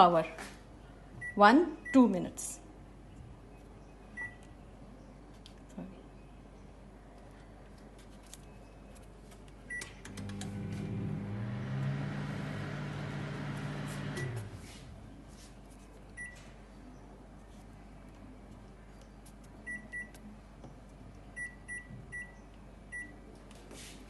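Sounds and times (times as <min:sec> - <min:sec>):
microwave oven humming: 0:09.7 - 0:14.8.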